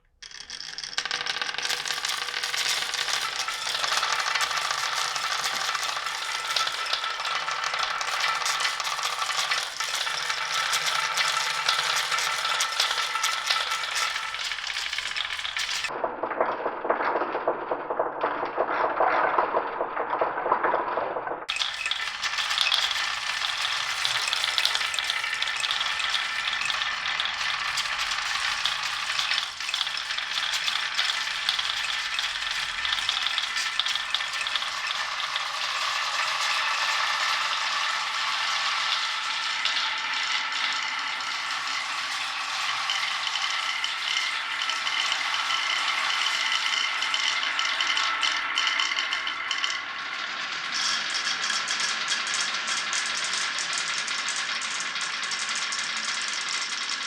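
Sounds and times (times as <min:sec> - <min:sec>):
marbles clattering along a track: 0:00.0 - 0:57.0.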